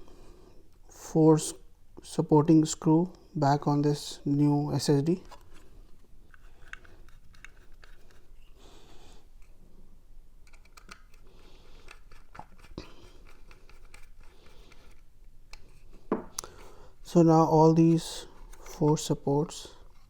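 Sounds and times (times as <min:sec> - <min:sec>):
screwdriver clicking and scraping: 0:06.3 - 0:08.4, 0:10.4 - 0:15.9.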